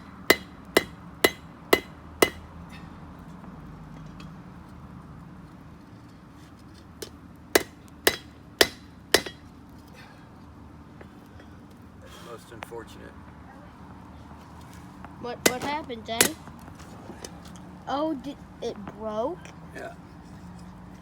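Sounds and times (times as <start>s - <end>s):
hammer striking steel on anvil: 0.0s - 2.5s, 7.6s - 9.5s, 15.4s - 16.4s.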